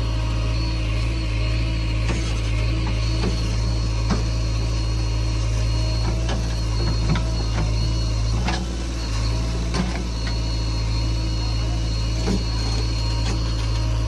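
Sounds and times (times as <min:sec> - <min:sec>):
diesel engine running: 0:00.0 - 0:14.0
knocks and clanks of machinery: 0:02.0 - 0:04.6, 0:05.7 - 0:10.6, 0:11.9 - 0:14.0.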